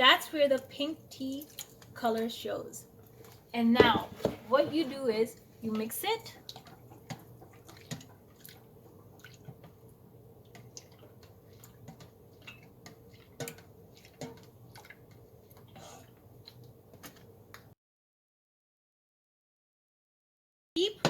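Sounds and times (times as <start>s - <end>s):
liquid dripping and splashing: 0.5s - 2.3s, 5.4s - 17.7s.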